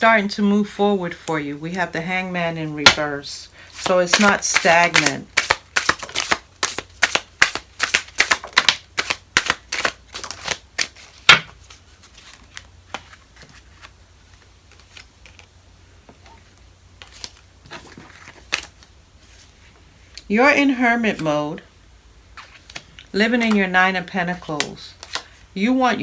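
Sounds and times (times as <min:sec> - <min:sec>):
cards snapping while shuffled: 0:03.8 - 0:11.6, 0:24.6 - 0:25.3.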